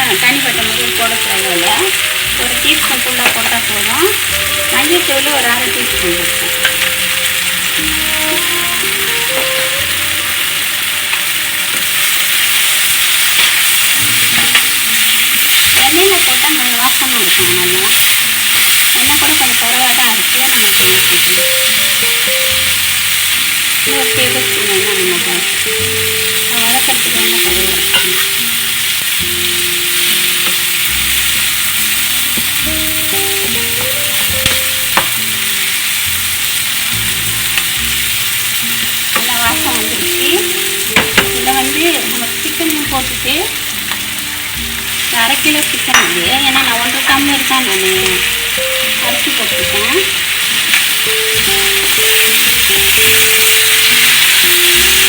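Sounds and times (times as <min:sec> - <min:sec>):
masala sizzling in hot oil: 0:00.0 - 0:55.0
spoon knocking against pan: 0:40.9 - 0:41.4, 0:45.9 - 0:46.4.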